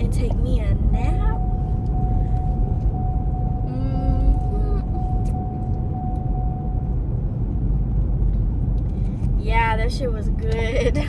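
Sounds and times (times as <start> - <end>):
car engine and road rumble: 0.0 - 11.0
faint steady tone: 0.9 - 7.0.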